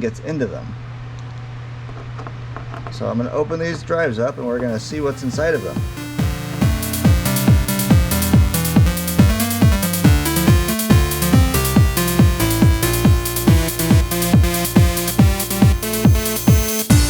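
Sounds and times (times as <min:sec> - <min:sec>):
held synth notes: 0:04.6 - 0:17.0
fast kick-drum beat: 0:04.9 - 0:17.0.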